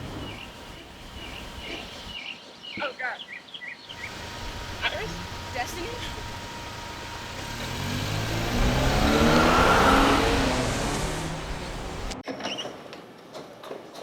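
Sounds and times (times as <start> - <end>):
car driving past: 3.9 - 12.2.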